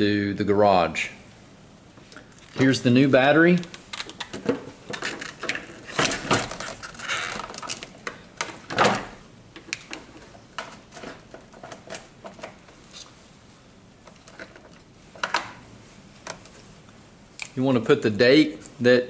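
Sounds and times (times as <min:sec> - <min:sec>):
handling clicks and knocks: 0:03.5 - 0:12.8, 0:14.0 - 0:15.6.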